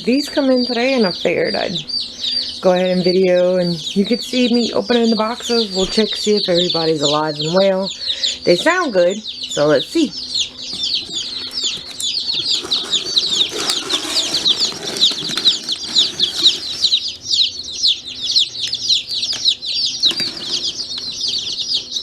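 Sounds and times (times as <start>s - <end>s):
chicks peeping: 0.0s - 22.0s
rustling handling noise: 11.0s - 17.2s, 20.0s - 21.6s.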